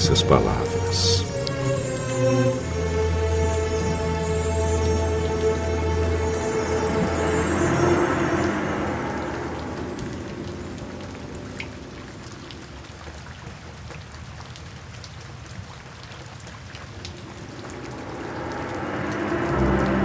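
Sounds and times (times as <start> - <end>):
gentle background music: 0.0 - 11.2, 17.4 - 20.0
steady rain falling: 0.0 - 20.0.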